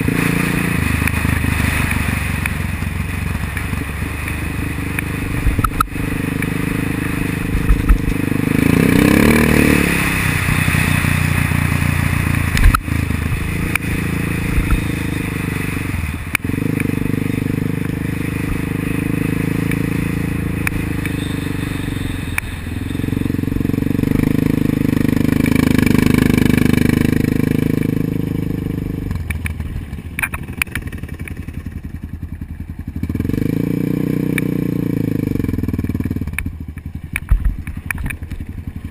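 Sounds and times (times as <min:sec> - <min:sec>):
atv engine revving: 0:00.0 - 0:38.9.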